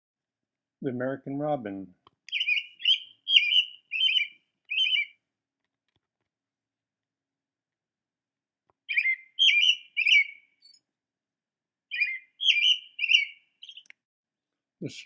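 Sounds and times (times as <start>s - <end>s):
robin singing: 2.2s - 5.2s, 8.8s - 10.9s, 11.9s - 14.0s.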